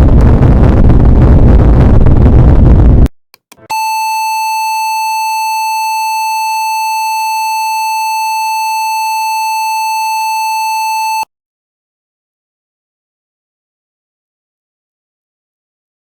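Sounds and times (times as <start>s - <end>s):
loud high electronic beep: 3.6s - 11.2s.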